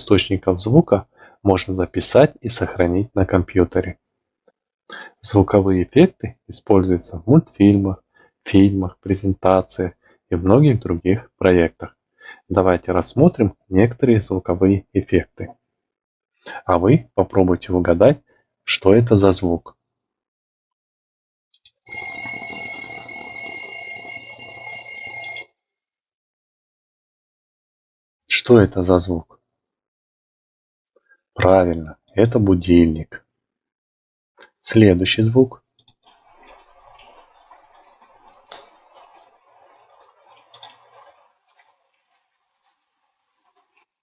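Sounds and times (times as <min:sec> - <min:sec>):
alarm clock ringing: 0:21.9 - 0:25.7
rain patter: 0:36.0 - 0:44.0.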